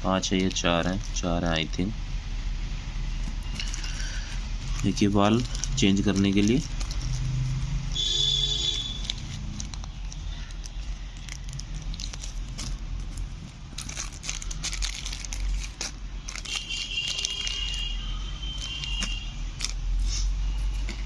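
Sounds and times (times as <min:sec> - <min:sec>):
packaging crinkling: 0:03.2 - 0:08.1, 0:08.7 - 0:19.9.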